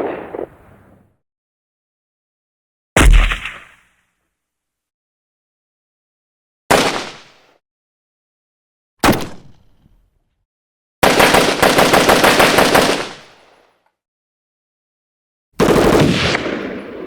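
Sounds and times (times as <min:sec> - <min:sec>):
single gunshots: 0:00.0 - 0:00.8, 0:03.0 - 0:03.8
automatic gunfire burst: 0:15.6 - 0:16.4.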